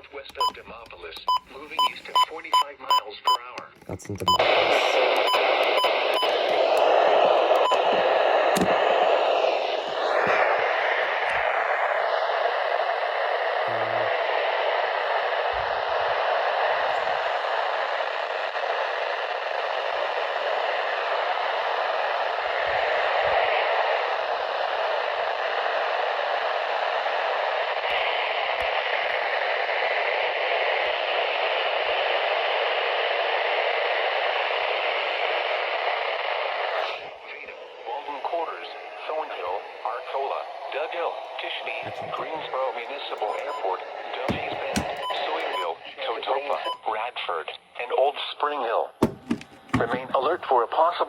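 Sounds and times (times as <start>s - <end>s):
radio static hiss: 0.0s - 51.0s.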